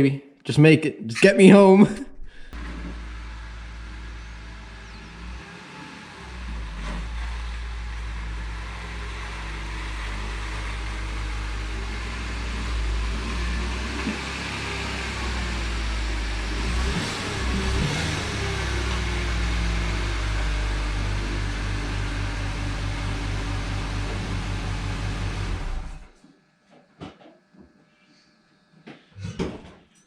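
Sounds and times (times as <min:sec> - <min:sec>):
car engine drone: 0:02.0 - 0:26.2
road noise: 0:02.5 - 0:26.1.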